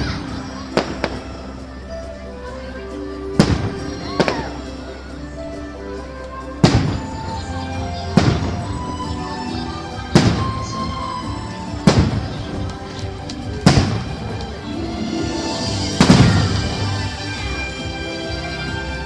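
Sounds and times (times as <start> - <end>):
music: 0.0 - 19.0
fireworks booming: 3.4 - 4.7, 6.6 - 7.4, 8.1 - 9.0, 10.1 - 14.6, 15.5 - 17.4.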